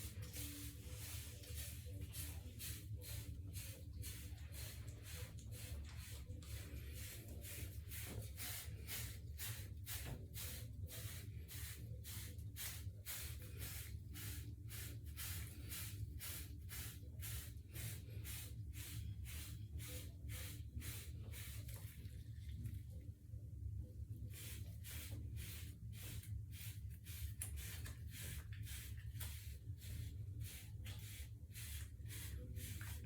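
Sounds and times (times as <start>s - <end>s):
hair brush stroking through hair: 0.0s - 21.8s.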